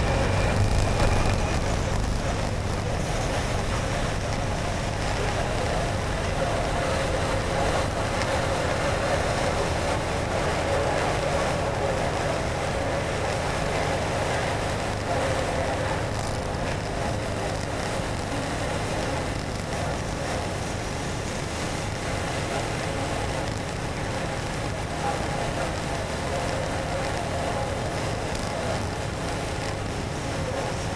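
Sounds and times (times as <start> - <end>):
motorcycle engine and road noise: 0.0 - 13.2.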